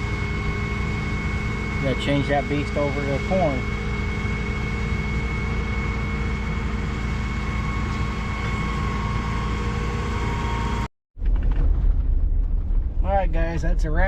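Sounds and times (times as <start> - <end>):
engine idling: 0.0 - 10.9.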